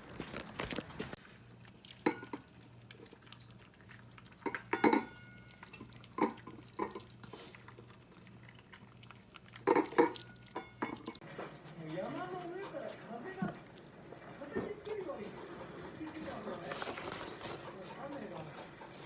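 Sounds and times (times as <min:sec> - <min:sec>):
tableware clinking: 0:02.1 - 0:02.4, 0:04.5 - 0:07.0, 0:09.7 - 0:11.2.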